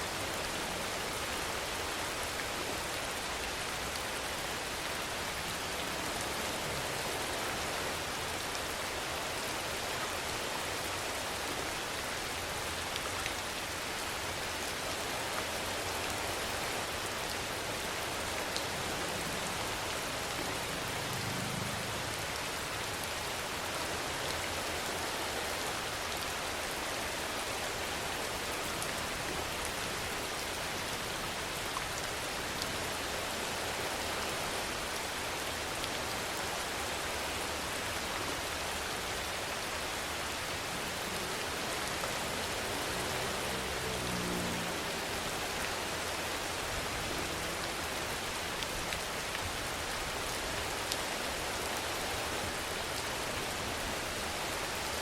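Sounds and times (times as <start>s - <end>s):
steady rainfall: 0.0s - 55.0s.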